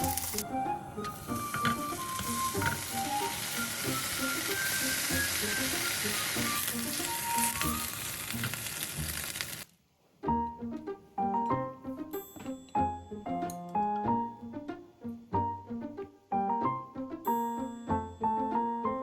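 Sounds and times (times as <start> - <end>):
food sizzling in a pan: 0.0 - 0.4, 1.2 - 9.7
light background music: 0.0 - 9.5, 10.2 - 19.0.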